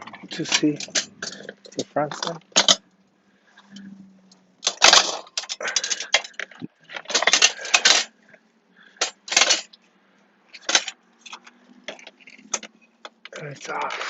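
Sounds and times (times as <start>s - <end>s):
metal tools clinking and clattering: 0.0s - 2.8s, 4.6s - 8.1s, 9.0s - 9.8s, 10.5s - 14.0s.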